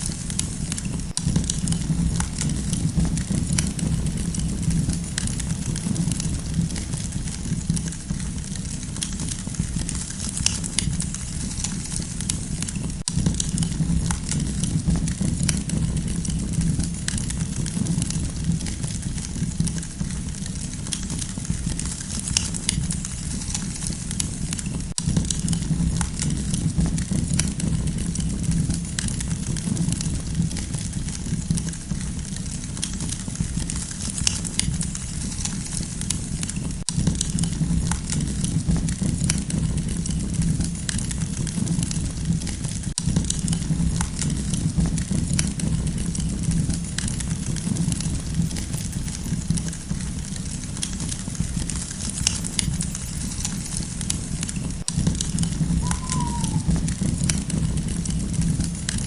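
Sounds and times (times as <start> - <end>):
campfire crackling: 0.0 - 10.2, 43.0 - 59.0.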